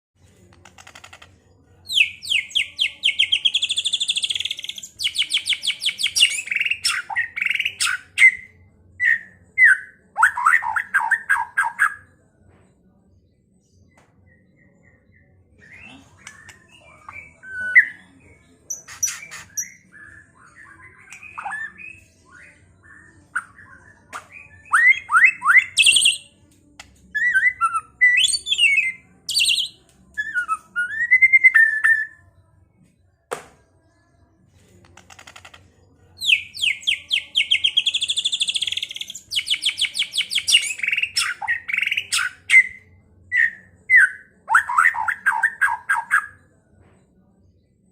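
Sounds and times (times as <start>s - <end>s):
bird singing: 1.9s - 12.0s, 36.2s - 46.4s.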